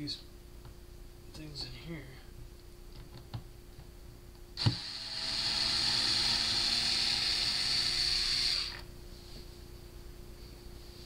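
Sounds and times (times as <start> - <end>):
small motor whirring: 4.6 - 8.9.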